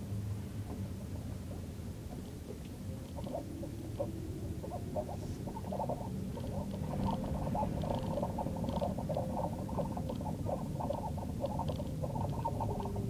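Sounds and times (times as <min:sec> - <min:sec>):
faint steady tone: 0:00.0 - 0:13.0
steady low rumble: 0:00.0 - 0:13.0
fast irregular ticking chatter: 0:01.5 - 0:13.0.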